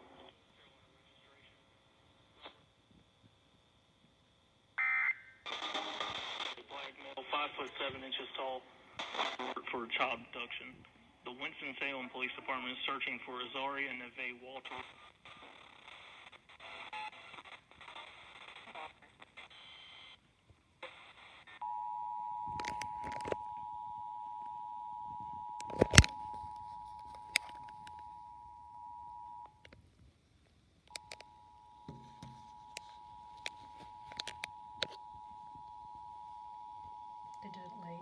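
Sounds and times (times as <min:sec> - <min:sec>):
muffled radio audio: 0:00.0 - 0:03.0, 0:04.8 - 0:21.6, 0:22.6 - 0:23.4, 0:25.1 - 0:29.4, 0:30.9 - 0:36.0, 0:37.3 - 0:38.0
sharp clicks: 0:25.6 - 0:26.4, 0:30.9 - 0:31.3, 0:32.2 - 0:35.0.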